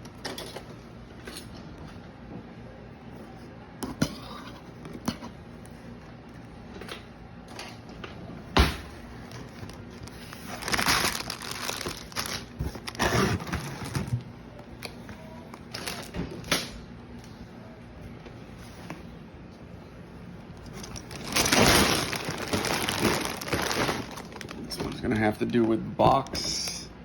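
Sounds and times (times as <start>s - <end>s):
packaging crinkling and tearing: 9.2s - 14.2s, 15.6s - 16.6s, 20.6s - 26.2s
packaging clicks: 20.7s - 25.8s.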